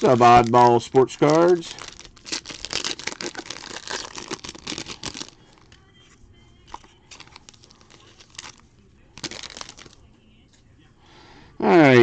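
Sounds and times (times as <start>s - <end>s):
packaging tearing and crinkling: 0.0s - 5.7s, 6.7s - 8.6s, 9.2s - 10.0s.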